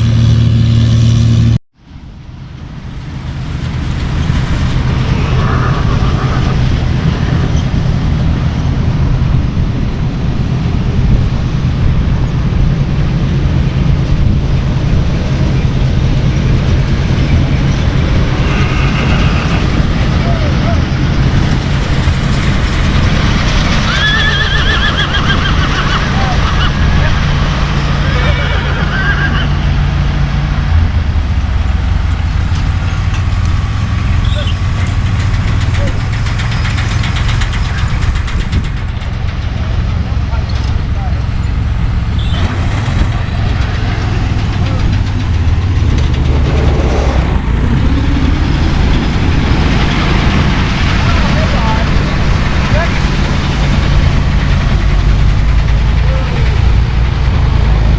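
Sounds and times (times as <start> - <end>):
engine running loud: 0.0 - 57.9
horse whinnying: 18.4 - 19.8, 23.8 - 26.8, 28.0 - 29.7.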